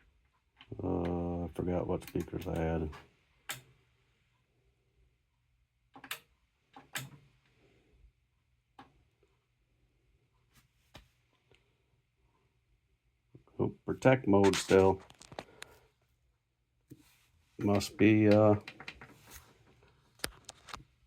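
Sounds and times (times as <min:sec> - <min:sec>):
sharp clicks of receiver controls: 0:02.0 - 0:03.7, 0:05.9 - 0:07.2.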